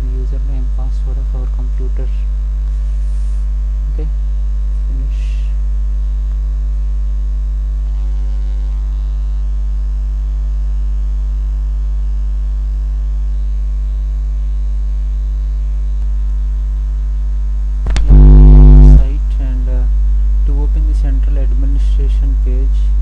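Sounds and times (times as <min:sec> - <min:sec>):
electrical mains hum: 0:00.0 - 0:23.0.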